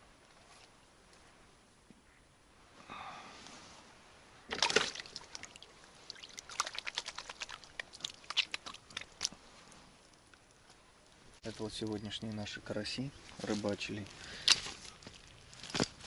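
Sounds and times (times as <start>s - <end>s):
water splashing: 4.5s - 10.6s.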